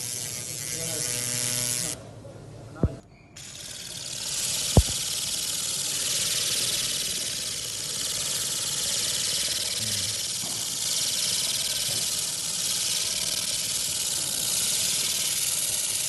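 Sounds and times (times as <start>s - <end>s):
laser cleaning hiss: 3.4s - 16.0s.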